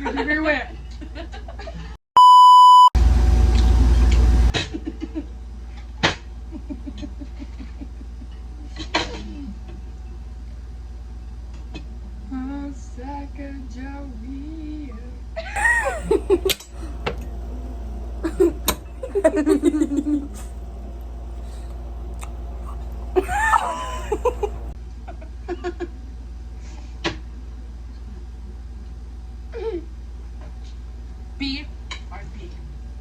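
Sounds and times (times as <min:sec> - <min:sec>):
people giggling and squealing: 0:15.6 - 0:24.7
steady low hum: 0:15.6 - 0:24.8.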